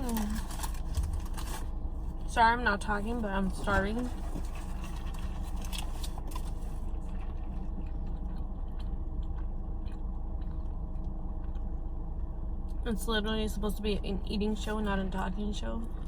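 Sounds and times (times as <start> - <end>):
low hum: 0.0 - 16.0
chewing and biting food: 3.5 - 12.8.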